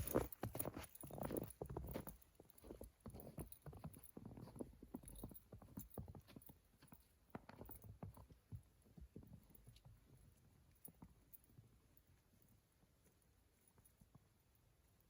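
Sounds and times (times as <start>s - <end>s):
footsteps in snow: 0.0s - 3.3s.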